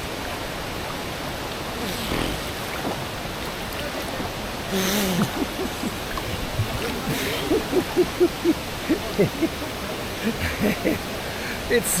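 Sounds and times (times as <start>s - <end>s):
fast water current rushing: 0.0s - 12.0s
water splashes: 0.0s - 12.0s
swimmer puffing and grunting: 1.7s - 9.6s.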